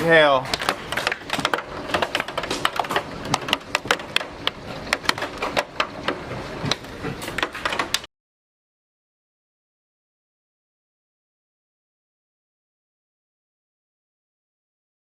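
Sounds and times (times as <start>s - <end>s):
hailstones clacking: 0.0s - 8.1s.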